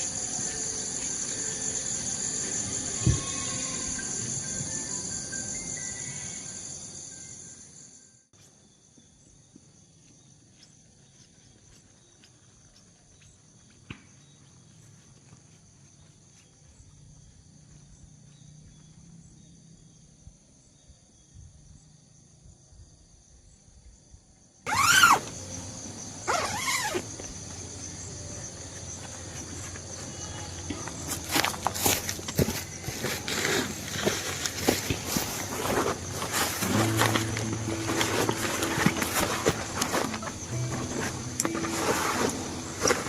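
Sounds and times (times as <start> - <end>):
crickets trilling: 0.0 - 43.0
shrill rising and falling calls: 24.7 - 25.6, 26.2 - 27.0.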